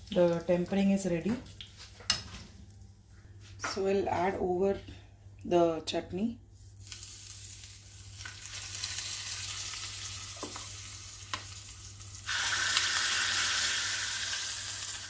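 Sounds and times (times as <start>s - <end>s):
spices sizzling in hot oil: 6.8s - 15.0s.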